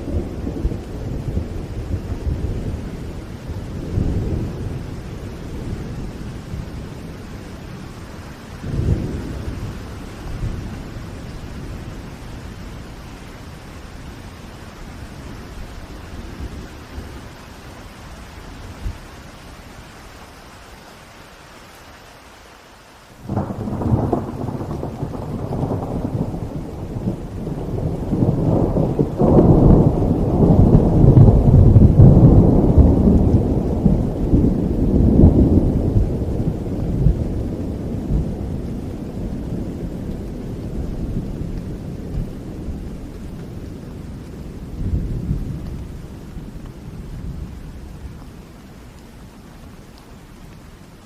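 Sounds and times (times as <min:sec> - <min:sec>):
thunder clap and rumble: 0:00.0 - 0:13.3, 0:23.2 - 0:48.6
steady rain: 0:00.0 - 0:51.0.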